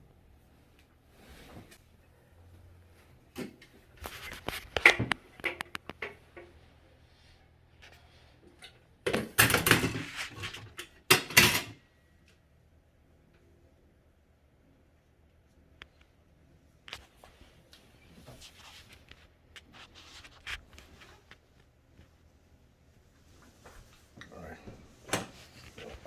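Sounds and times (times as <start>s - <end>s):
handling clicks knocks and rustles: 3.3s - 6.6s, 7.8s - 12.4s.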